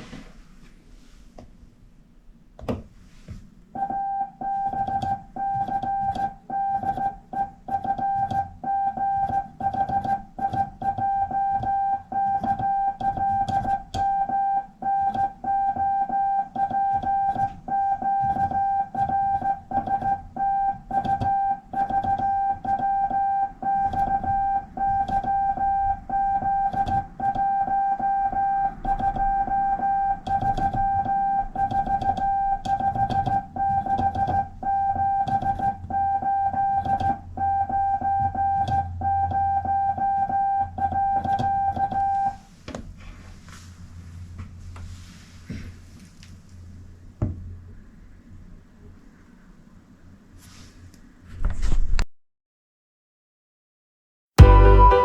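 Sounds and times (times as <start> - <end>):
morse code beeps: 3.8 - 42.4, 54.4 - 55.0.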